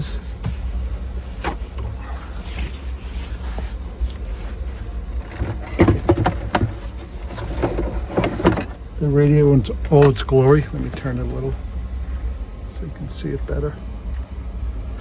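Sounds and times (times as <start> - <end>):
steady low hum: 0.0 - 15.0
knocks clicks and light scrapes: 1.4 - 8.8.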